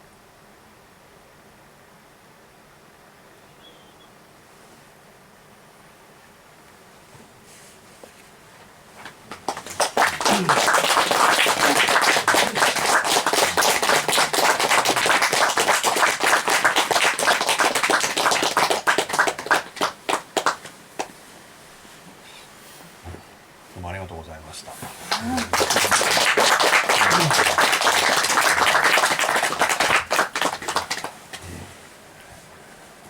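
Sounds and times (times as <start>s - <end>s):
audience applauding: 9.0s - 21.1s, 25.0s - 31.7s.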